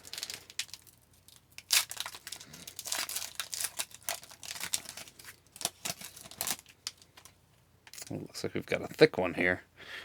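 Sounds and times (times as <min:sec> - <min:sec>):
wrapper crinkling and tearing: 0:00.0 - 0:07.3.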